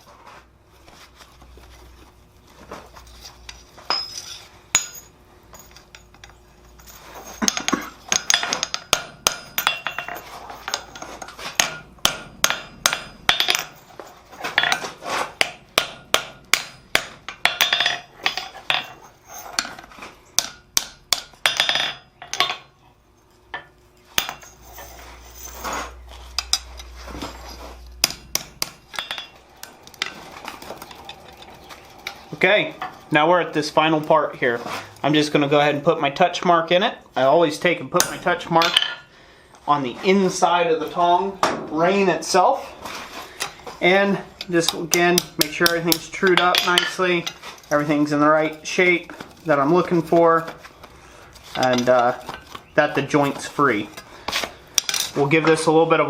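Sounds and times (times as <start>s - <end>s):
hammer striking metal tongs: 3.9s - 6.4s, 7.4s - 13.9s, 14.6s - 22.7s, 23.6s - 24.9s, 28.0s - 31.1s, 38.0s - 39.1s, 44.4s - 47.4s.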